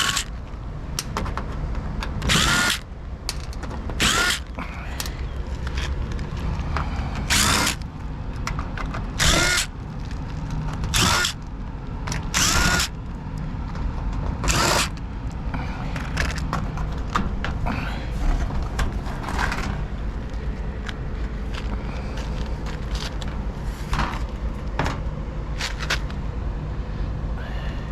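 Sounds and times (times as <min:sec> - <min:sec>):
power drill whining: 0:00.0 - 0:00.3, 0:02.3 - 0:02.9, 0:04.0 - 0:04.6, 0:07.2 - 0:07.8, 0:09.2 - 0:09.7, 0:10.9 - 0:11.4, 0:12.3 - 0:13.0, 0:14.5 - 0:15.0.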